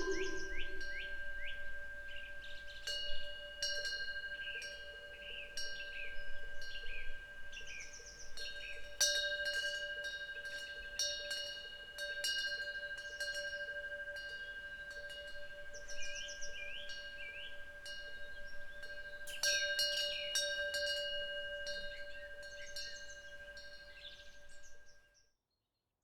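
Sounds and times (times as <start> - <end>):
small birds chirping: 0.0 - 1.5
wind bell ringing: 0.0 - 7.6, 8.2 - 24.7.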